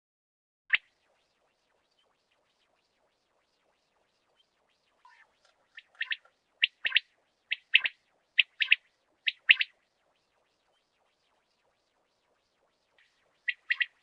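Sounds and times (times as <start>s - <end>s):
quail calling: 5.1s - 9.7s, 13.5s - 14.0s.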